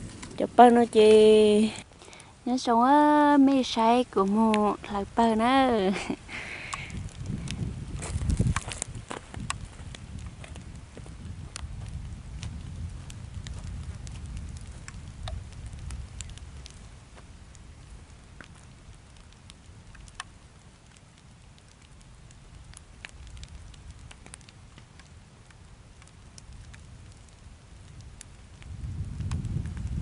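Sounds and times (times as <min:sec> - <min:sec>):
low rumble: 0:00.0 - 0:01.9
crackling clicks: 0:00.0 - 0:02.3, 0:03.2 - 0:30.0.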